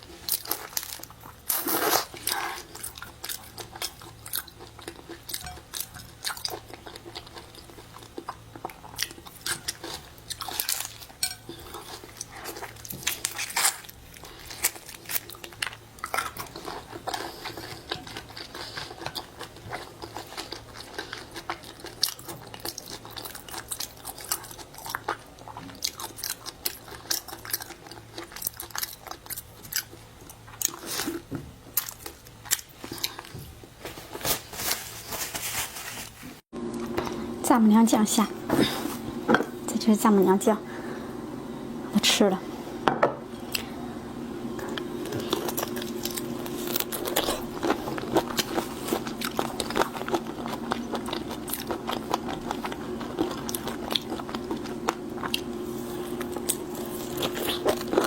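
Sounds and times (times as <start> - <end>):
chewing: 0.1 - 33.4, 44.6 - 58.0
bites and crunches: 11.8 - 30.0, 45.0 - 55.4, 56.0 - 58.0.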